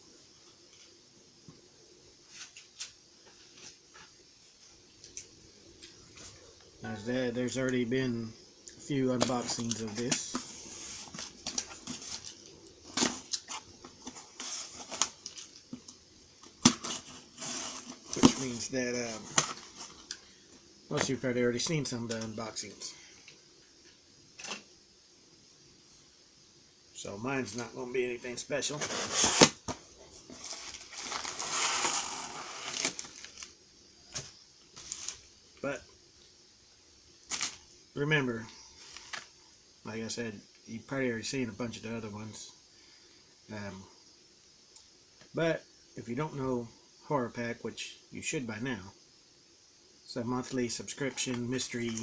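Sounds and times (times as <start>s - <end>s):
soft rustling: 28.7s - 33.5s, 34.2s - 35.3s
packaging crinkling: 30.3s - 33.5s.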